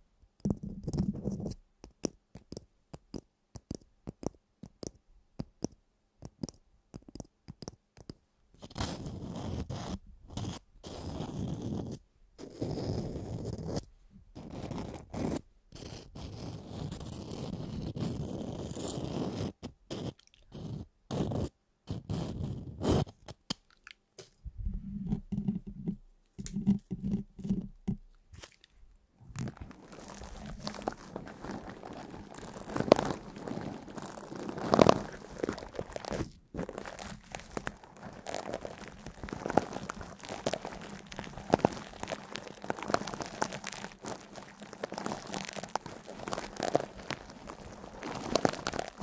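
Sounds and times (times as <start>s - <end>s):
close-up crunching and crackling: 28.4s - 49.0s.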